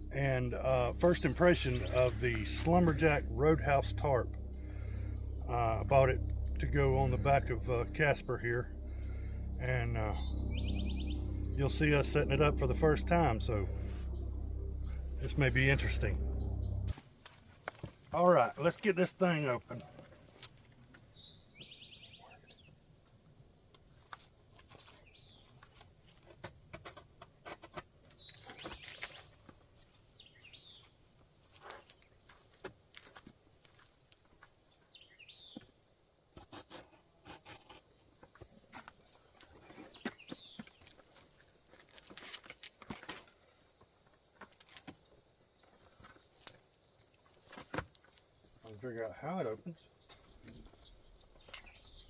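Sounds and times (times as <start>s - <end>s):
bird chirps: 0.0s - 15.4s, 50.0s - 52.0s
tarp packaging rustling and clicking: 24.1s - 29.6s, 38.6s - 43.5s.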